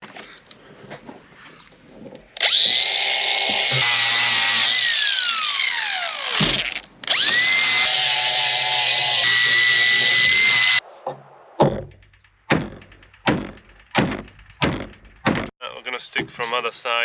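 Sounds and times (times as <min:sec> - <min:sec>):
angle grinder whining: 0:02.4 - 0:10.8.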